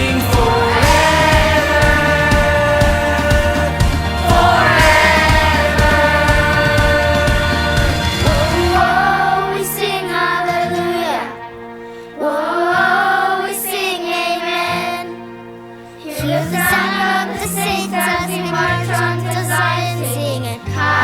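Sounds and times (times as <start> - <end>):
backing track with bass line: 0.0 - 10.9
children singing: 0.0 - 15.3, 16.0 - 21.0.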